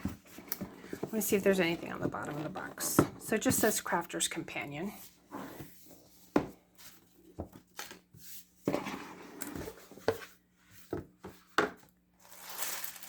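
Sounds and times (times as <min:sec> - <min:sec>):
rustling: 0:12.2 - 0:13.0.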